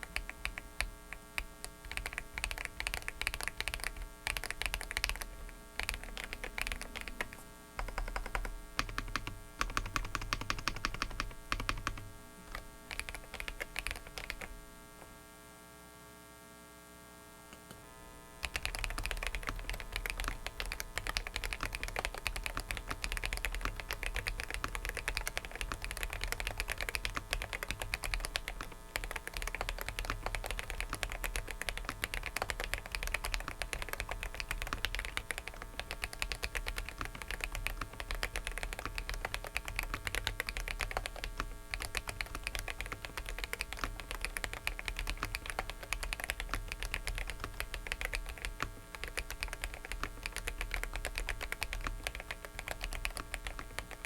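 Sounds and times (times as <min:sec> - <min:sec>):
mechanical keyboard typing: 0:00.0 - 0:14.5, 0:18.4 - 0:54.0
faint steady whine: 0:00.0 - 0:54.0.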